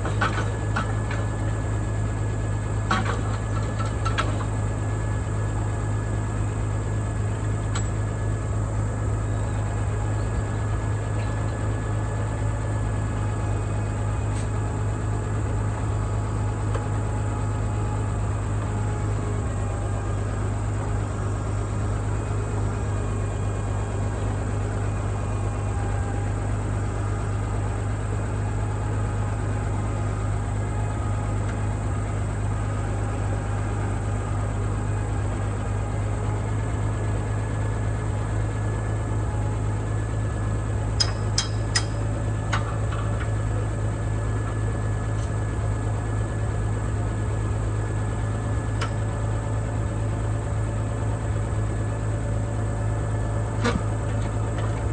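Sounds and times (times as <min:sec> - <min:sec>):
tractor engine running: 0:00.0 - 0:54.9
sharp metallic clicks: 0:41.0 - 0:42.6.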